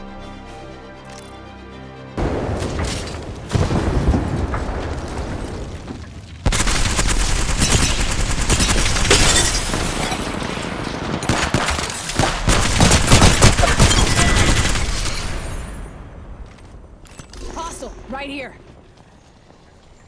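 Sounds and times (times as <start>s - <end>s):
automatic weapon gunfire: 11.2s - 15.2s.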